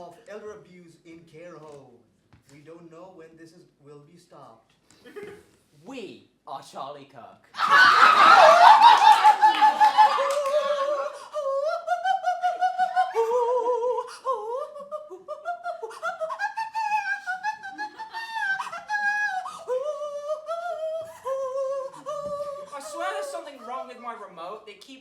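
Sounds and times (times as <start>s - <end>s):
laughter: 5.0s - 5.5s, 7.6s - 11.2s
high voice singing mock-operatic: 9.7s - 23.3s.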